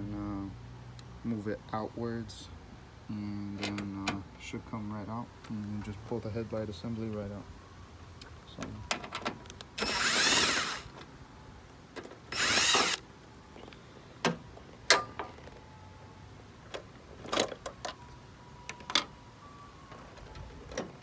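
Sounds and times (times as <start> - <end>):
power drill whining: 9.8 - 10.9, 12.3 - 13.0.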